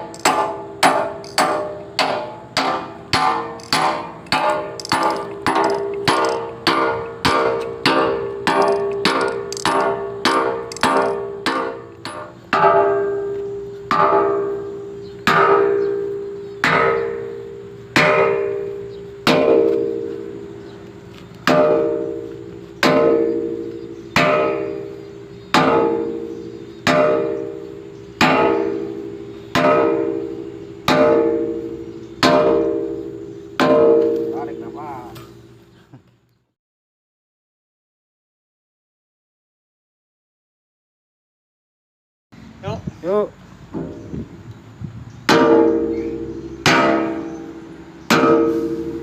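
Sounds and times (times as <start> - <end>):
hammer striking steel: 0.0 - 15.9, 16.6 - 20.3, 21.4 - 24.8, 25.5 - 35.3, 45.3 - 49.0.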